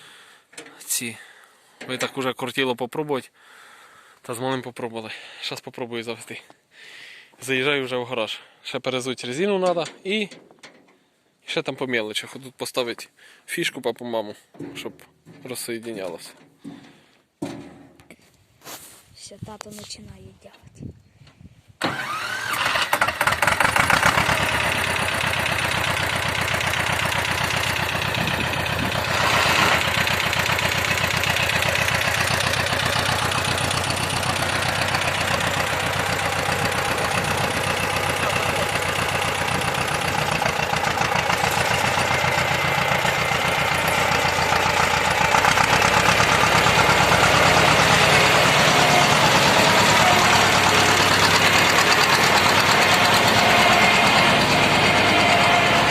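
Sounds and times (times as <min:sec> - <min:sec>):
tractor diesel engine running: 0:21.8 - 0:55.9.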